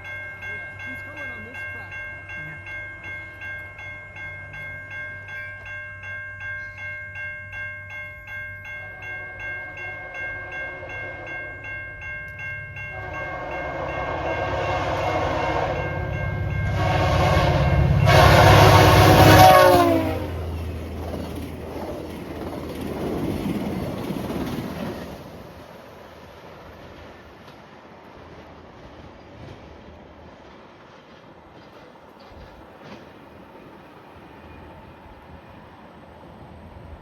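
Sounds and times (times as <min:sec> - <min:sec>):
level-crossing bell ringing: 0:00.0 - 0:20.0
train horn blast: 0:08.9 - 0:11.5, 0:12.9 - 0:20.6
train wheels rumbling on rail: 0:09.0 - 0:37.0.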